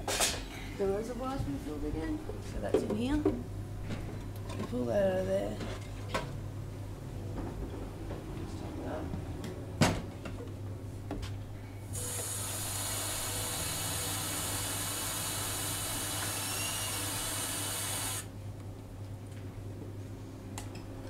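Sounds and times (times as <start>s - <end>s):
tap water running: 12.0s - 18.3s.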